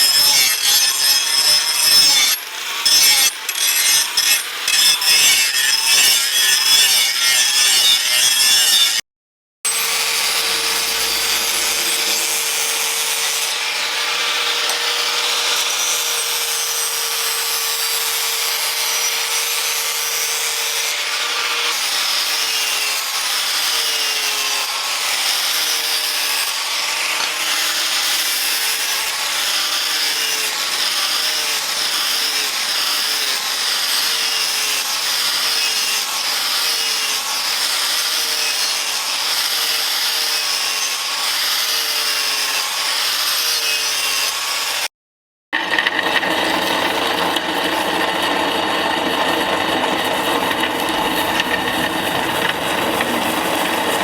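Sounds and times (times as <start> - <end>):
wood being rasped by hand: 9.7 - 16.6
power tool running on wood: 9.7 - 44.8, 45.6 - 54.0.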